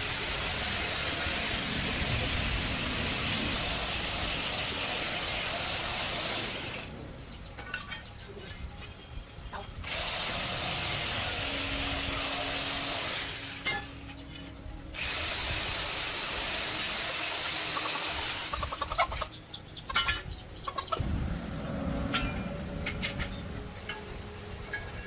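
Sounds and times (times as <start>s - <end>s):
power tool hissing and whining: 0.0s - 7.0s, 9.8s - 19.2s
low rumble: 20.3s - 25.0s.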